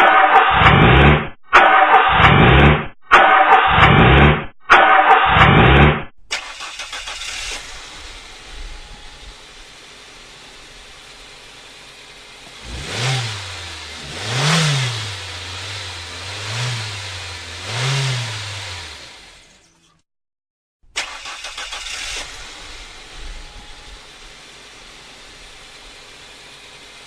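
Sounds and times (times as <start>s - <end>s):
car engine revving: 0.3s - 1.4s, 2.0s - 4.5s, 5.4s - 19.6s
starter motor cranking: 6.3s - 8.4s, 21.0s - 23.0s.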